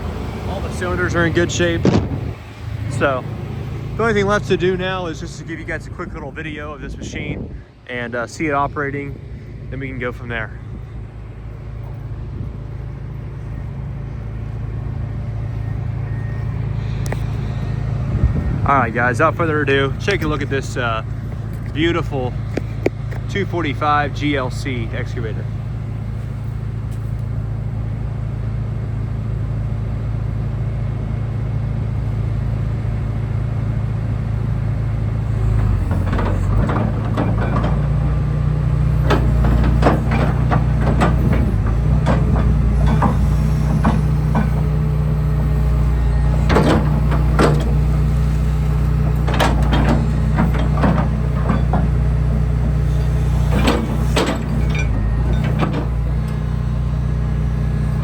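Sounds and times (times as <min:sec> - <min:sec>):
excavator diesel engine: 0:00.0 - 0:58.0
metal clanks and knocks: 0:35.4 - 0:58.0.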